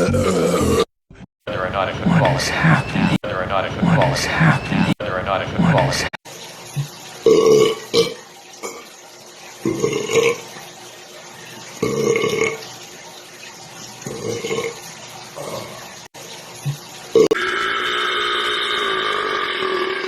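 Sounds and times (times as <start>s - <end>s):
man burping: 0.0s - 0.9s, 9.7s - 10.4s, 11.8s - 12.6s, 17.2s - 20.0s.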